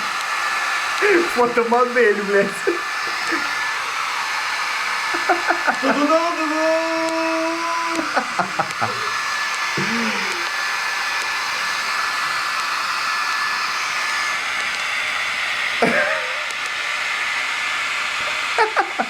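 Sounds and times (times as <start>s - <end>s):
hair dryer blowing: 0.0s - 19.0s
short vocal sound: 9.8s - 10.5s.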